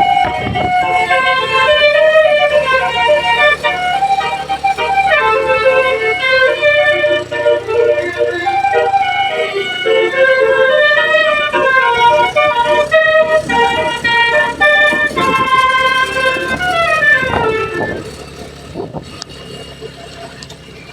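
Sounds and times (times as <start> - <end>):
musical bus horn playing a tune: 0.0 - 19.6.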